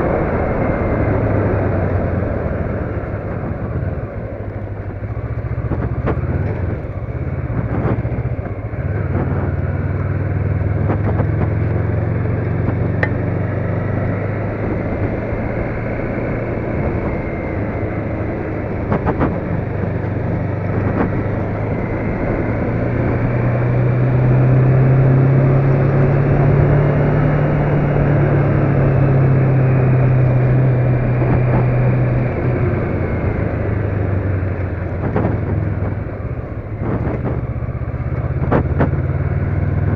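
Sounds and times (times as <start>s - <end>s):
road noise: 0.0s - 39.9s
vehicle engine hum: 0.0s - 39.9s
knocks from road bumps: 34.9s - 36.0s, 36.7s - 39.1s.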